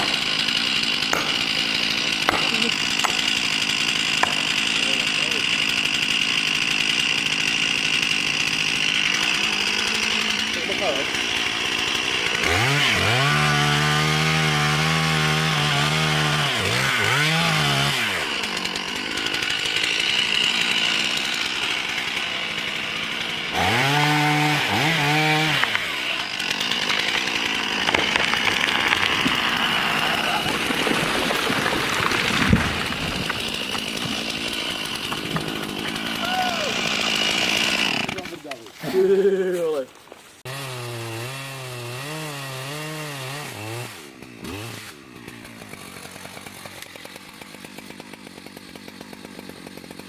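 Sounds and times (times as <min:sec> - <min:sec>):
chainsaw revving: 0:00.0 - 0:50.0.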